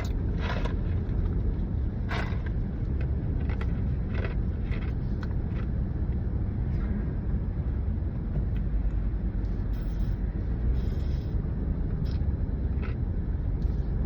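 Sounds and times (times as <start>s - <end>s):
ice being chewed: 0.0s - 1.4s, 2.0s - 5.7s
road rumble inside car: 0.0s - 14.0s.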